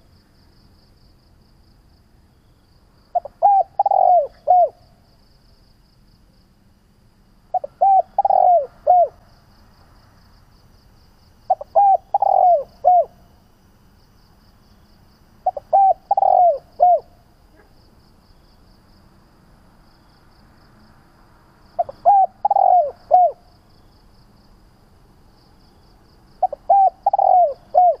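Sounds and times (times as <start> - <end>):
dove cooing: 3.1 - 4.8, 7.5 - 9.2, 11.5 - 13.2, 15.4 - 17.7, 21.8 - 23.5, 26.4 - 28.0.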